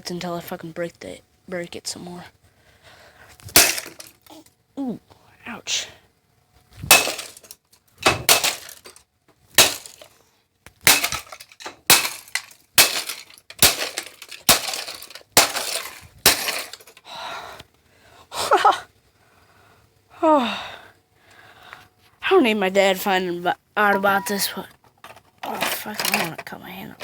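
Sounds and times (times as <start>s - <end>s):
stick smashing plastic device: 3.5s - 4.2s, 6.9s - 10.1s, 10.8s - 17.0s.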